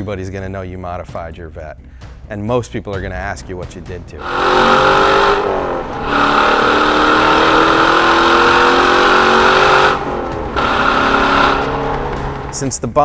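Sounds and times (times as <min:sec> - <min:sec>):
sports car engine accelerating: 0:04.2 - 0:12.7.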